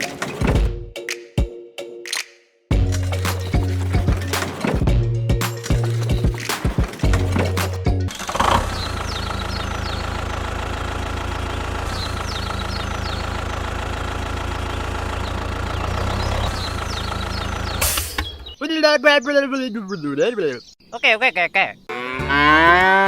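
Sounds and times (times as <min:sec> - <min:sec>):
tractor engine idling: 0:02.7 - 0:18.1.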